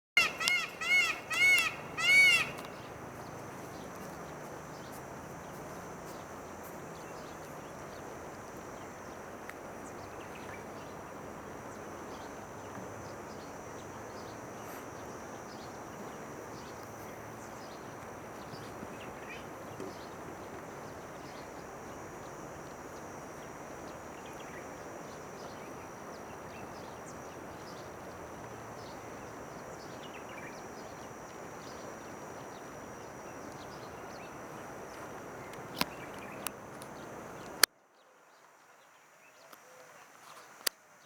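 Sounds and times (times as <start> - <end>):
peacock calling: 0.2 - 3.2
outdoor hiss: 0.2 - 41.0.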